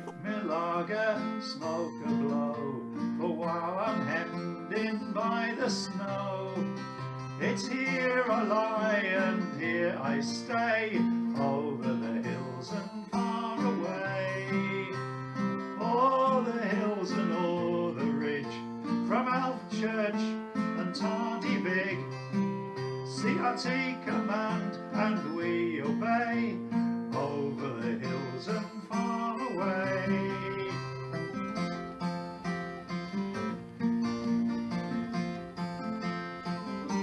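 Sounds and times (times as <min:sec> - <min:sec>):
person singing: 0:00.0 - 0:37.0
strummed acoustic guitar: 0:00.0 - 0:37.0.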